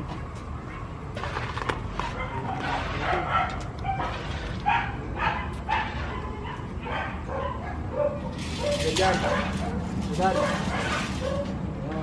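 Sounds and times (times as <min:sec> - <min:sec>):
dog barking: 0:02.0 - 0:11.5.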